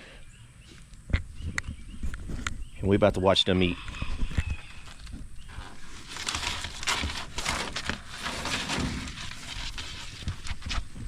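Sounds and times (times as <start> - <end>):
lizard rustling and crunching: 3.7 - 11.0.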